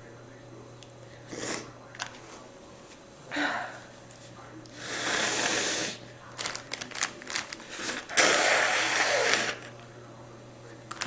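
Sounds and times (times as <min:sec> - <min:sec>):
person blowing nose: 0:04.8 - 0:06.0, 0:07.7 - 0:09.7.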